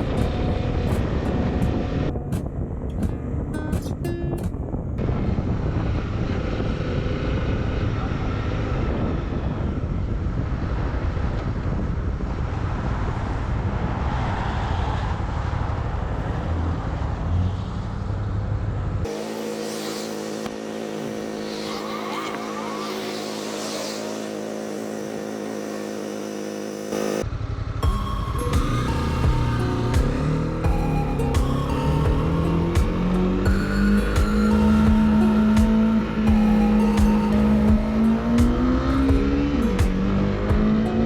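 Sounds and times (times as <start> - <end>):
wind rumble on microphone: 0.0 - 19.1
motorcycle engine running: 18.1 - 41.0.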